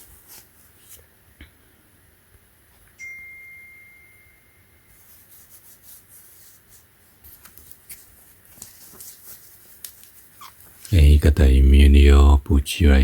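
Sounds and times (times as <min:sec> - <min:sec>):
ringing chime: 0:03.0 - 0:04.9.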